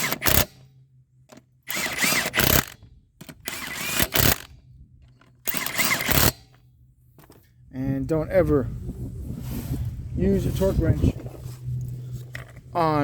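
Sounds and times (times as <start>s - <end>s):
impact wrench bursts: 0.0s - 0.6s, 1.6s - 4.5s, 5.4s - 6.5s.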